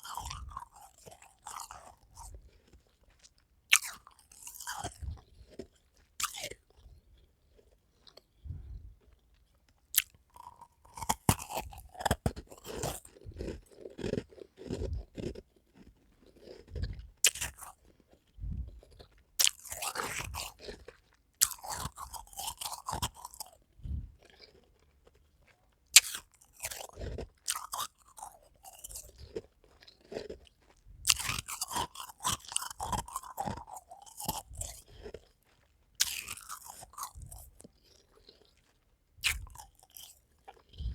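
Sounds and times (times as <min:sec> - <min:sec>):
ice crunching while chewed: 0:00.0 - 0:40.9
ice cracking when bitten: 0:36.0 - 0:37.4.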